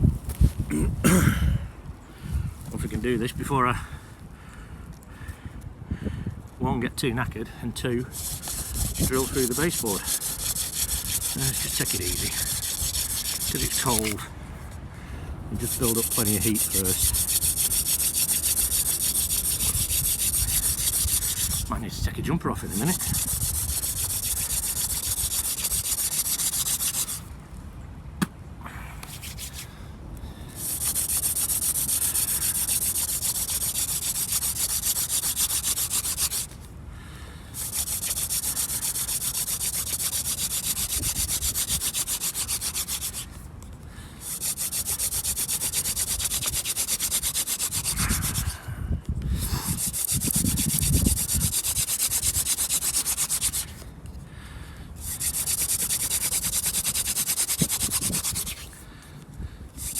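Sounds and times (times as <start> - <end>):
wooden spindle grinding friction: 8.0 - 14.2, 15.6 - 21.8, 22.6 - 27.3, 30.6 - 36.6, 37.6 - 43.3, 44.2 - 48.6, 49.4 - 53.8, 55.0 - 58.8.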